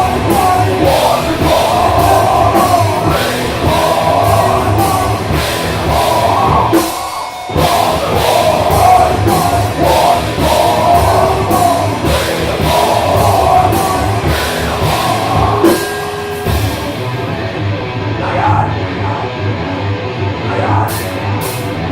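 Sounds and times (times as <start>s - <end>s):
drum kit beat: 0.0s - 17.3s
heavy metal band playing live: 0.0s - 21.9s.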